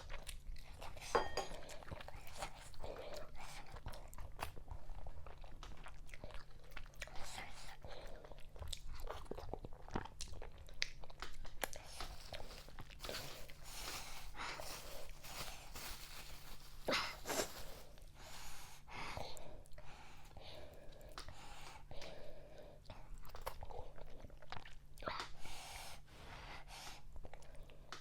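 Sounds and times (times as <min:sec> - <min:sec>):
chewing with wet mouth clicks: 0:00.0 - 0:12.2, 0:20.6 - 0:25.4.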